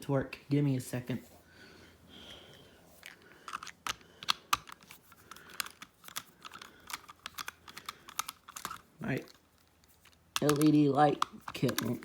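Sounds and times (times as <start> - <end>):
small clicks and taps on plastic: 3.4 - 9.4, 10.0 - 12.0.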